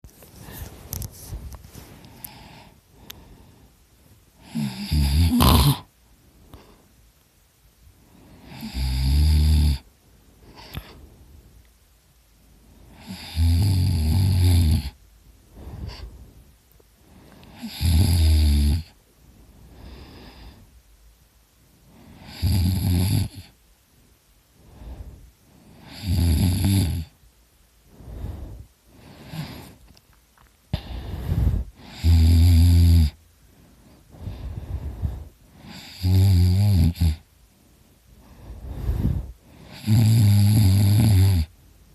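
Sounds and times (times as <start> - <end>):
soft breaths: 0.1 - 8.9, 9.8 - 22.5, 23.3 - 26.2, 26.9 - 41.9
man snoring loudly: 4.4 - 5.9, 8.4 - 9.8, 13.0 - 15.0, 17.6 - 18.9, 22.2 - 23.5, 25.8 - 27.1, 31.8 - 33.2, 35.7 - 37.2, 39.7 - 41.5.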